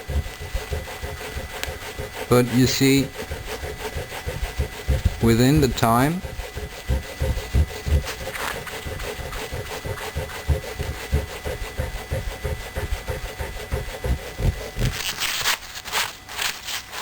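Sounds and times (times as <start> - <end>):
eraser rubbing on plastic case: 0.0 - 17.0.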